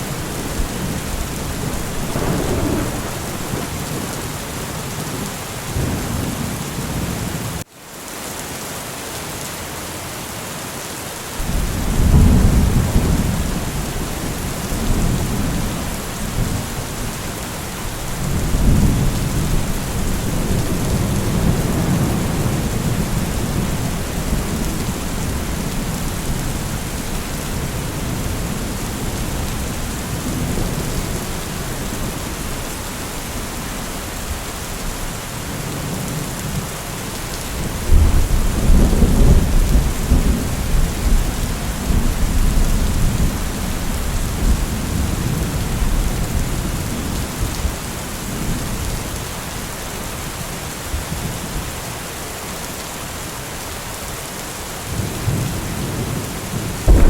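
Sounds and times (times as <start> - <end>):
rolling thunder: 0.0 - 7.1, 11.4 - 33.7, 37.5 - 47.5, 54.9 - 57.0
rain falling steadily: 0.0 - 57.0.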